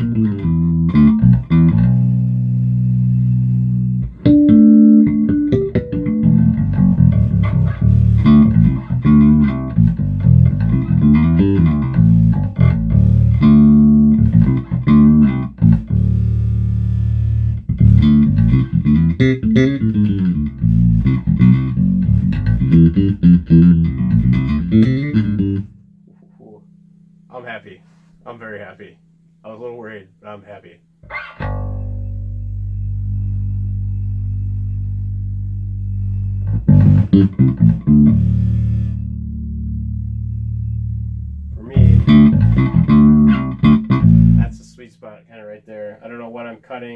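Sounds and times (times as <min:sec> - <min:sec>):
electric bass plucked notes: 0:00.0 - 0:27.5, 0:31.0 - 0:44.8.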